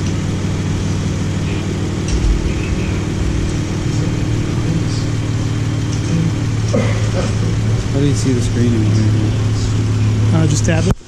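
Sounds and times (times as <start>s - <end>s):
car engine idling: 0.0s - 11.0s
low thump: 2.1s - 5.7s.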